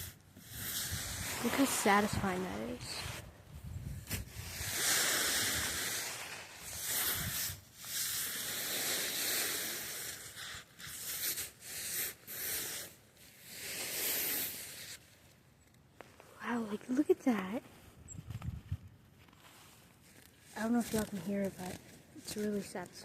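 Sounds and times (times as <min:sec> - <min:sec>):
snow being swiped off surface: 0:00.0 - 0:03.3, 0:03.9 - 0:15.0.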